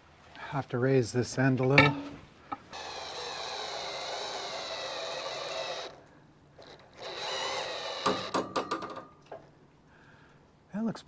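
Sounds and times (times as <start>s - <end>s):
hydraulic pump motor whining: 1.6s - 8.6s.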